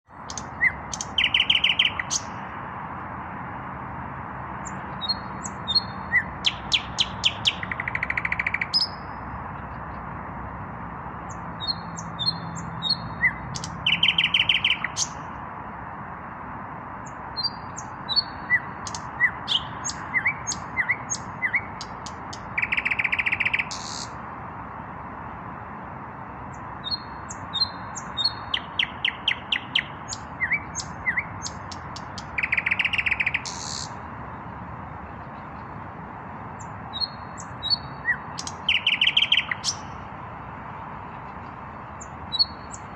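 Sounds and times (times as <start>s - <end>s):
nightingale singing: 0.0s - 2.5s, 4.6s - 10.0s, 11.3s - 15.4s, 17.0s - 24.2s, 26.5s - 34.0s, 36.5s - 40.1s, 41.1s - 42.9s.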